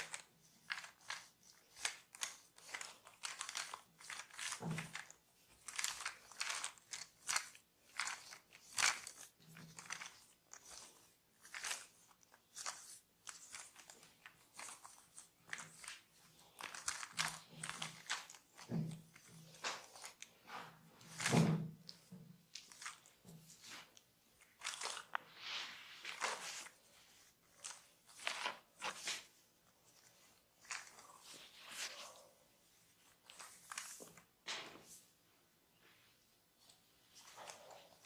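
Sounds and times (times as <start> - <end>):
hands rubbing skin and hair: 21.9 - 35.1, 36.6 - 38.0.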